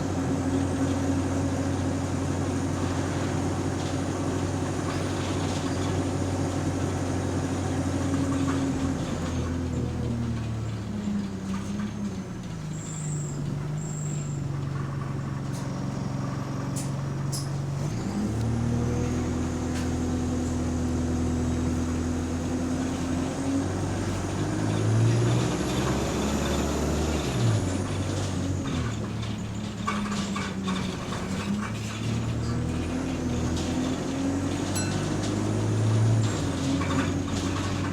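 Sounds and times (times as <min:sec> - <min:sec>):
bus engine running: 0:00.0 - 0:37.9
rattles: 0:07.6 - 0:37.9.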